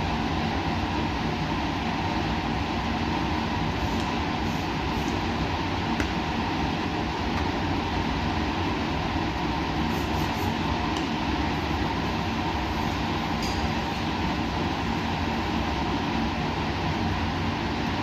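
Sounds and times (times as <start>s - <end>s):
machinery humming: 0.0s - 18.0s.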